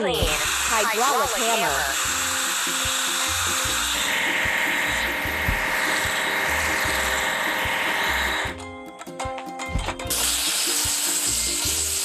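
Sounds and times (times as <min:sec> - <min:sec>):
mechanical hiss: 0:00.2 - 0:08.5, 0:10.1 - 0:12.0
background music with bass beat: 0:03.4 - 0:12.0.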